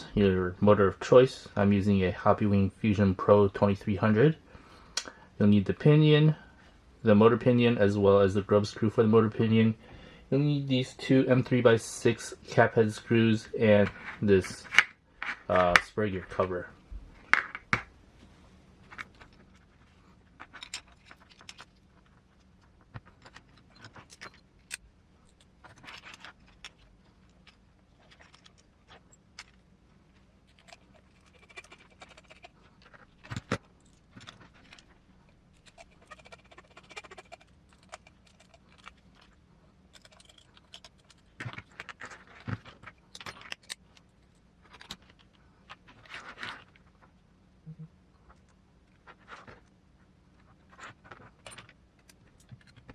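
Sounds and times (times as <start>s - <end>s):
metal parts and tools clicking: 20.4s - 22.1s, 22.9s - 29.6s, 30.4s - 45.3s.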